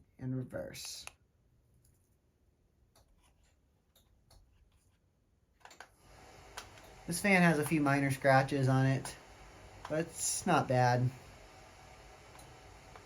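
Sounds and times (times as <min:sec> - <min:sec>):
ceiling fan hum: 0:05.9 - 0:13.0.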